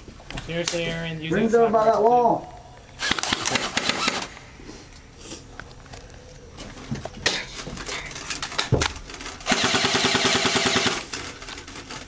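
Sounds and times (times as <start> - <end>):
airsoft gun firing full-auto: 3.0 - 4.3, 9.4 - 11.1
clicks and rustles: 5.5 - 9.5, 11.0 - 12.0.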